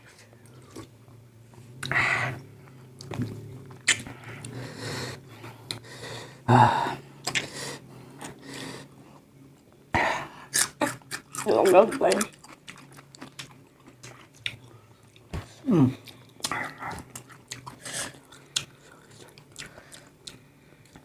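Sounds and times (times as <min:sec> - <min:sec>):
person chewing close up: 0:00.4 - 0:00.9, 0:02.9 - 0:04.6, 0:07.2 - 0:07.5, 0:10.5 - 0:15.3, 0:15.9 - 0:21.0.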